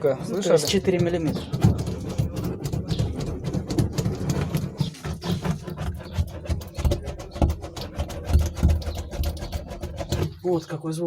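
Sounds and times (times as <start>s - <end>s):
dull thuds on metal panel: 0.0s - 10.4s
scraping and rubbing on metal: 0.0s - 10.8s.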